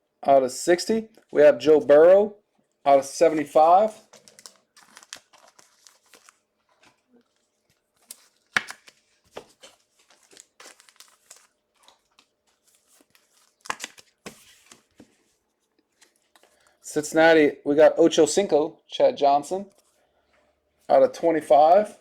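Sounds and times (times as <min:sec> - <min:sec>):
trading card packaging rustling: 0:03.0 - 0:16.8.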